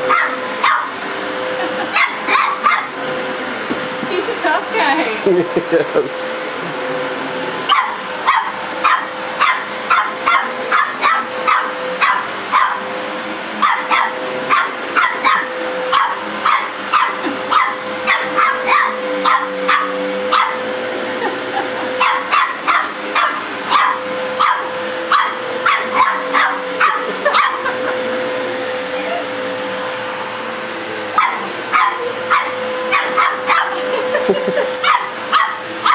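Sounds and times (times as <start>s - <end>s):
vacuum cleaner motor humming: 0.0s - 35.9s
dog barking: 0.1s - 1.0s, 2.0s - 2.9s, 7.7s - 12.8s, 13.6s - 20.6s, 22.0s - 27.7s, 31.2s - 33.8s, 34.8s - 35.9s.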